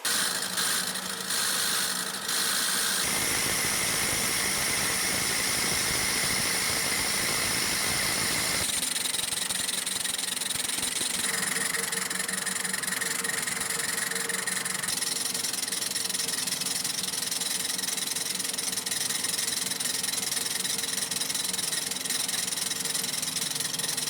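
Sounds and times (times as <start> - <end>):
fuel injection pump running: 0.0 - 24.0
loud hiss: 2.4 - 8.7.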